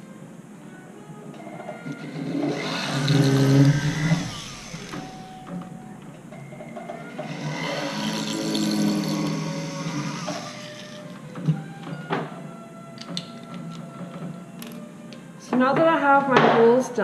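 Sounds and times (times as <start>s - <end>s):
flex shaft drill through metal: 1.8s - 11.3s.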